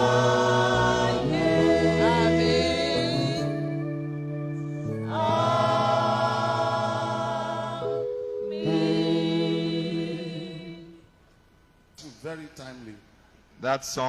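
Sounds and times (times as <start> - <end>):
church choir singing: 0.0 - 11.1.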